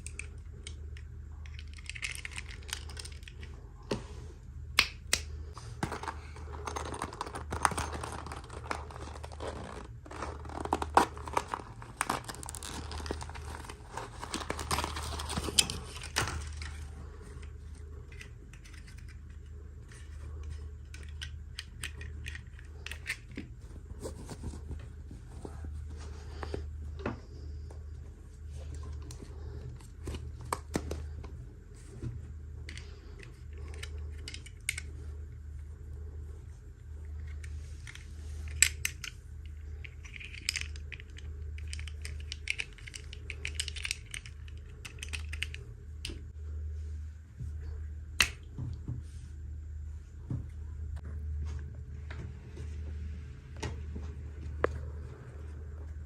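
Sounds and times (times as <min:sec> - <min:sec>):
steady low hum: 0:00.0 - 0:56.0
packaging crinkling and tearing: 0:05.8 - 0:16.7.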